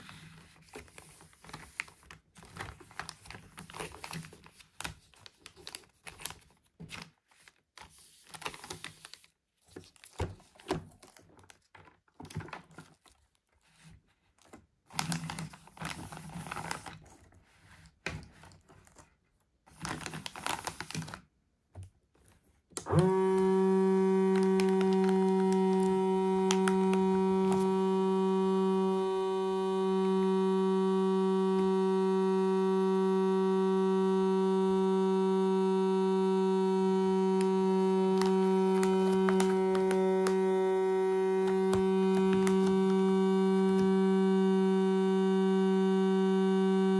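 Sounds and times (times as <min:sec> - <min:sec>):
plastic bag crinkling: 0:00.6 - 0:13.5, 0:19.7 - 0:21.2, 0:23.2 - 0:28.2, 0:37.1 - 0:43.9
vacuum sealer pump humming: 0:22.8 - 0:46.9.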